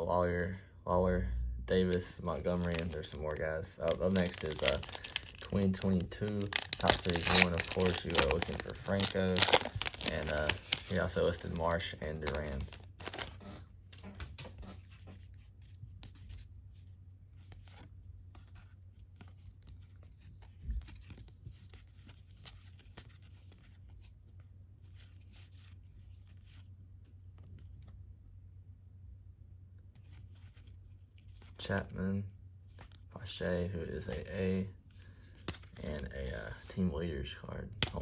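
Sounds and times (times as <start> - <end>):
steady low hum: 0.0 - 14.4
cards handled and slid: 1.8 - 13.4, 34.9 - 36.8, 37.8 - 38.0
wrapper rustling and tearing: 1.8 - 13.4.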